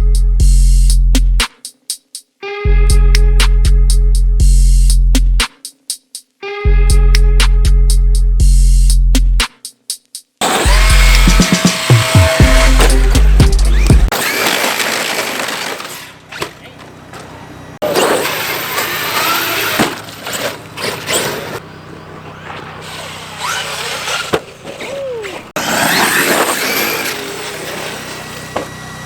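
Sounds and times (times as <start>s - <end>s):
electric motors whining and revving: 10.4s - 29.0s.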